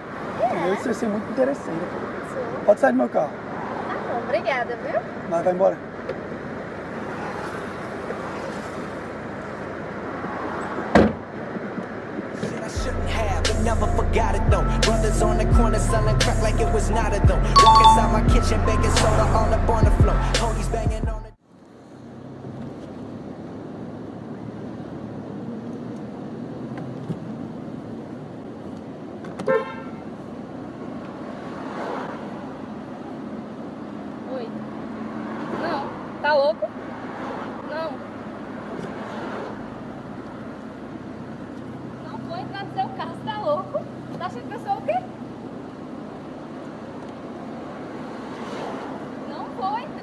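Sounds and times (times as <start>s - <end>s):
traffic noise: 0.0s - 50.0s
car door slamming shut: 10.9s - 11.3s
car horn toot: 17.6s - 18.8s, 29.4s - 30.1s.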